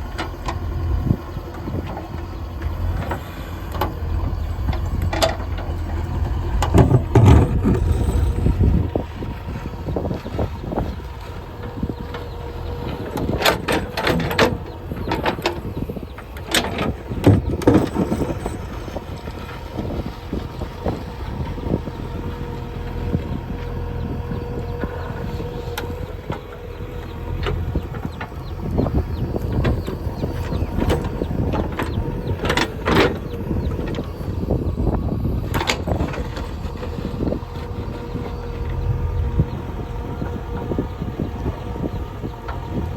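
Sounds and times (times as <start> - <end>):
diesel engine under load: 0.0 - 42.9.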